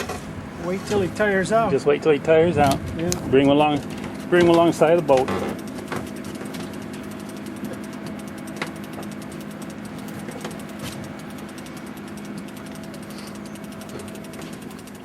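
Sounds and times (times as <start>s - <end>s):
boat engine idling: 0.0s - 15.0s.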